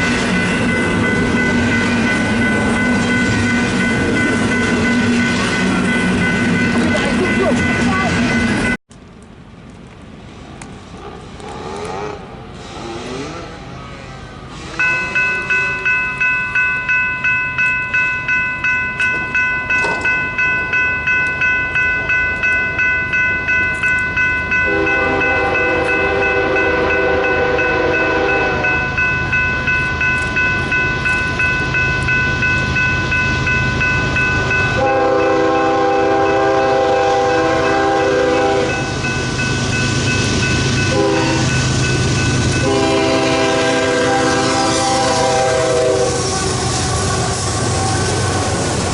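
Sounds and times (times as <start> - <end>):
locomotive engine rumbling: 0.0 - 48.9
bell ringing rapidly: 0.4 - 8.8, 14.8 - 26.1
locomotive horn blasts: 24.7 - 28.8, 34.8 - 38.8, 40.9 - 41.6, 42.6 - 48.3.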